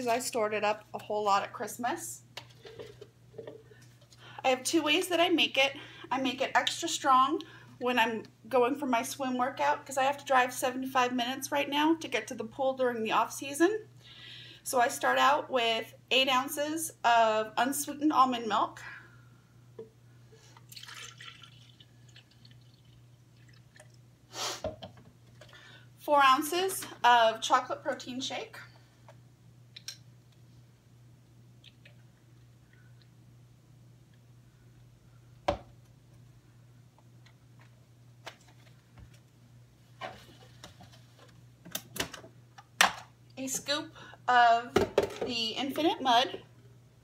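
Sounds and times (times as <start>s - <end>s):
liquid trickling and dripping: 20.6s - 24.0s, 31.6s - 32.2s.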